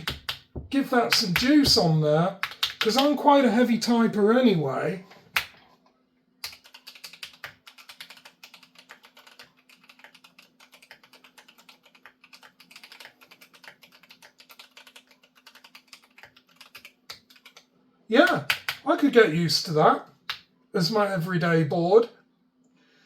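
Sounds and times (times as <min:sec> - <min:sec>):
mechanical keyboard typing: 0:00.0 - 0:01.8, 0:02.4 - 0:03.2, 0:06.4 - 0:17.6, 0:18.2 - 0:18.8.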